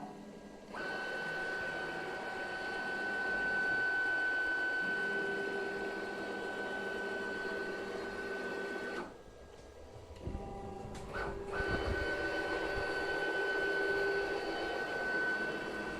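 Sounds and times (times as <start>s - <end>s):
stepper motor whining: 10.2s - 15.9s.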